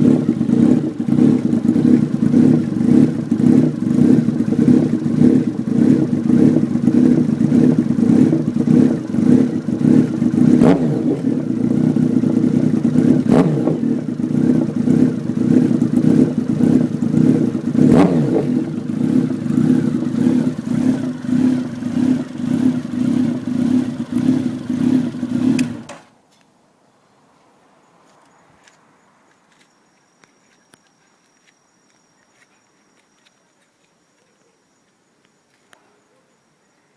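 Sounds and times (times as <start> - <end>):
motorcycle engine exhaust note: 0.0 - 26.0.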